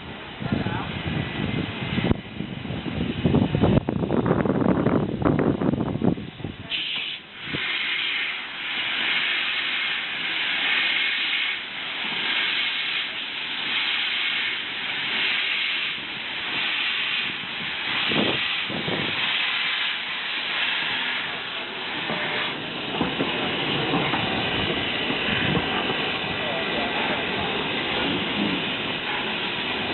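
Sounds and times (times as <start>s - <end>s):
low steam rushes: 0.0s - 29.9s
steam locomotive hissing: 6.6s - 29.9s.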